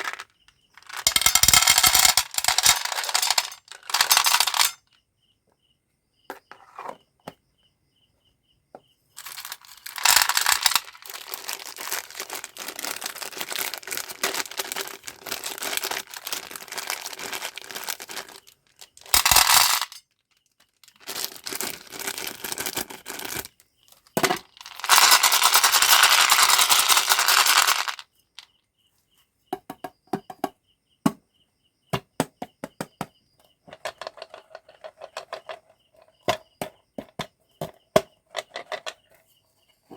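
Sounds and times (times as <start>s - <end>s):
sweets and wrappers clicking: 0.0s - 4.9s, 9.2s - 28.0s
packaging crinkling and tearing: 9.3s - 19.5s, 21.0s - 23.5s.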